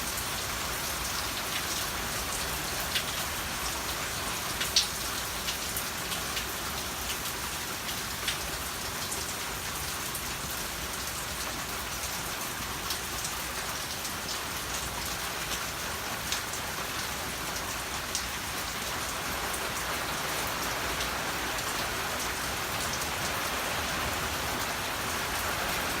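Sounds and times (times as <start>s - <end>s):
heavy rain hissing: 16.1s - 26.0s.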